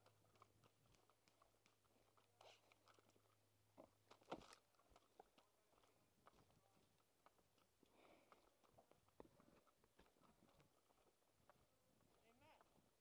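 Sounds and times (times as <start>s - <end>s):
faint crunches and clicks: 0.0s - 13.0s.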